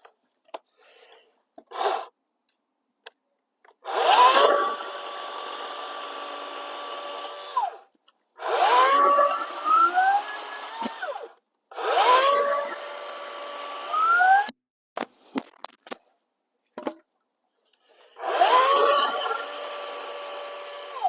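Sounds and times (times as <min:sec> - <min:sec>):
electric chainsaw motor whine: 0:03.9 - 0:07.8, 0:08.4 - 0:14.5, 0:18.2 - 0:21.0.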